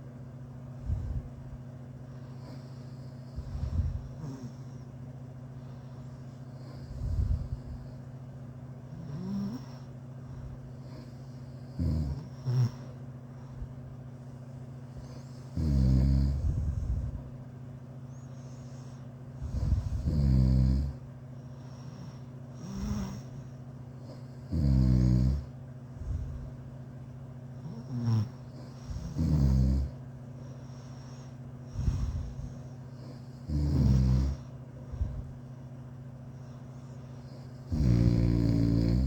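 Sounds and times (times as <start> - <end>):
soft breaths: 0.0 - 39.0
steady low hum: 0.0 - 39.0
person snoring: 8.9 - 9.9, 10.9 - 13.0, 15.0 - 17.2, 19.4 - 21.0, 21.9 - 23.3, 24.1 - 26.3, 27.6 - 30.0, 31.7 - 35.2, 37.2 - 39.0.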